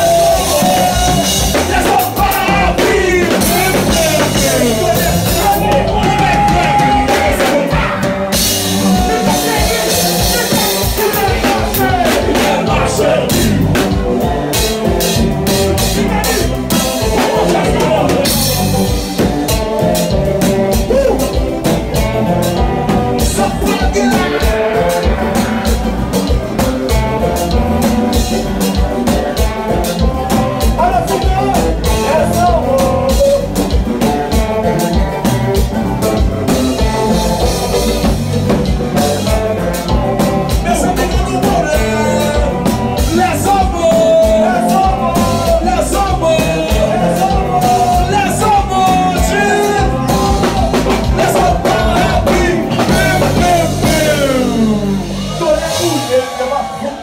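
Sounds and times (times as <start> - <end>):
person singing: 0.0 - 26.4, 28.2 - 35.4, 39.8 - 55.4
band music with drum beat: 0.0 - 57.0.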